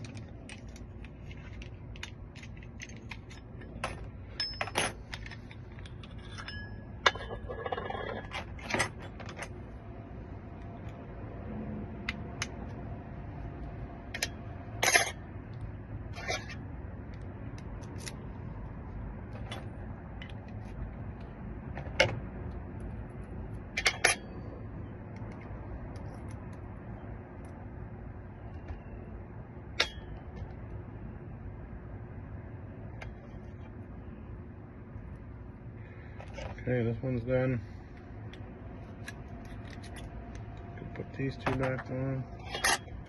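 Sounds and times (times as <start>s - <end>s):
metal lock parts clinking: 0.0s - 9.8s, 14.0s - 18.3s, 19.3s - 20.8s, 21.7s - 24.6s, 37.9s - 43.0s
low background hum: 0.0s - 43.0s.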